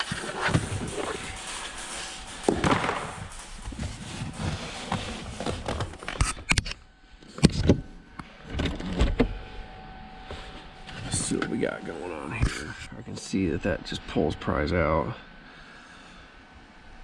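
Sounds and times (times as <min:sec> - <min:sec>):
floor mat rustling and scraping: 0:00.0 - 0:06.4.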